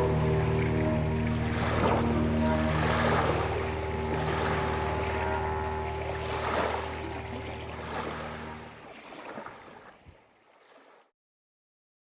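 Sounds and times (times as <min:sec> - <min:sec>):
steady low hum: 0:00.0 - 0:08.8
waves and water: 0:00.0 - 0:11.1.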